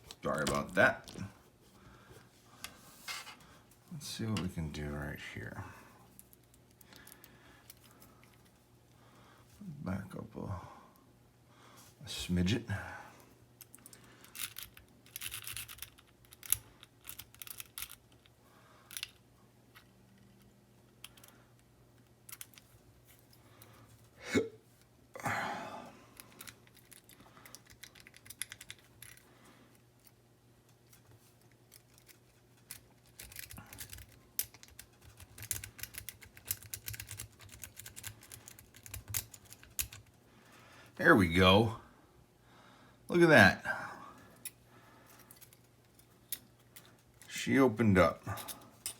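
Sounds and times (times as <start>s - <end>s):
lock pick clicking and scratching: 13.6s - 18.3s, 22.0s - 22.7s, 26.2s - 29.3s, 30.9s - 40.2s.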